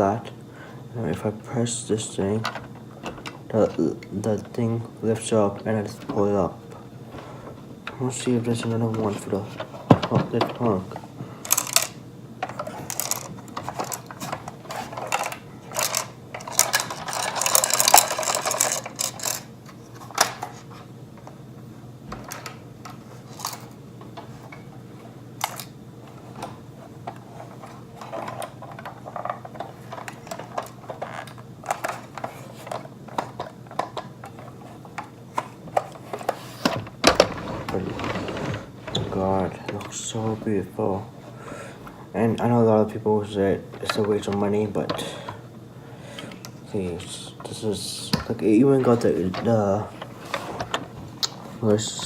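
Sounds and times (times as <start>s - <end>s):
steady low hum: 0.0s - 52.0s
rustling and scraping: 7.0s - 20.9s, 22.1s - 42.1s, 48.8s - 52.0s.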